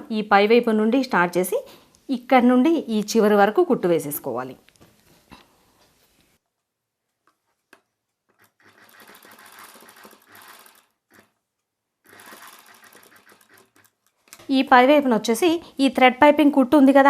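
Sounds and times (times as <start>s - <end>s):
sewing machine stitching: 8.3s - 11.4s, 12.0s - 14.3s.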